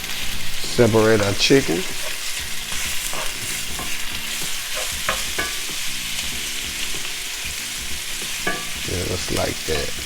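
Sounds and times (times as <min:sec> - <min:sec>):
chicken sizzling in frying pan: 0:00.0 - 0:10.0
utensil scraping and knocking pan: 0:01.2 - 0:06.0, 0:08.1 - 0:08.9.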